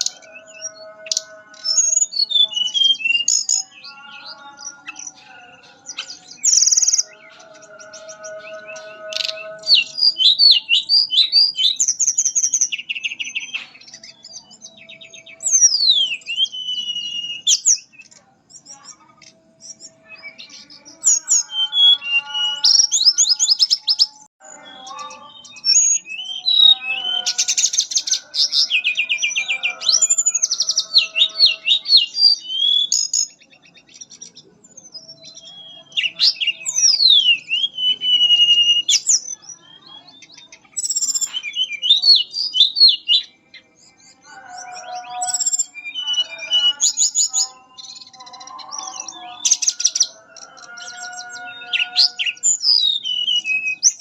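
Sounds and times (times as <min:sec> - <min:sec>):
flycatcher singing fluting whistles: 0:15.4 - 0:18.1.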